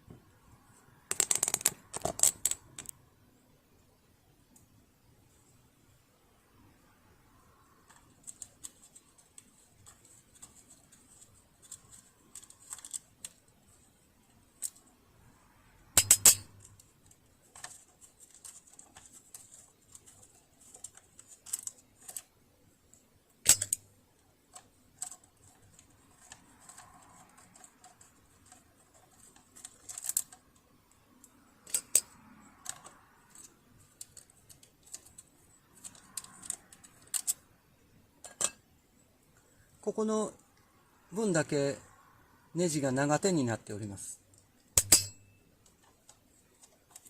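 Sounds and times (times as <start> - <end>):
screwdriver and screws clicking: 7.9 - 13.5, 16.0 - 22.3, 23.5 - 23.8, 44.8 - 47.0.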